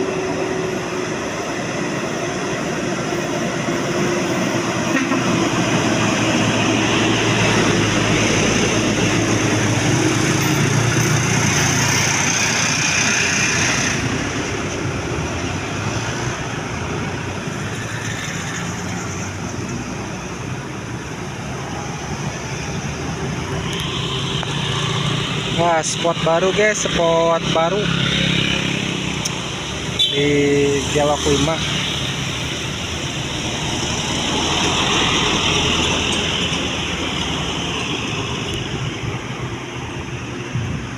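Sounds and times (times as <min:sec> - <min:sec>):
traffic hum: 0:00.0 - 0:40.9
large vehicle passing close: 0:21.5 - 0:40.9.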